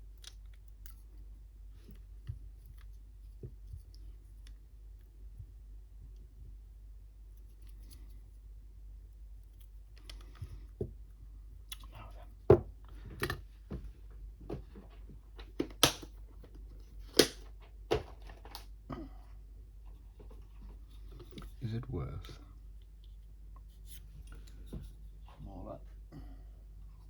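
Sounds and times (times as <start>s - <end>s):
small parts clicking and snapping: 0.0s - 1.2s, 9.4s - 10.5s.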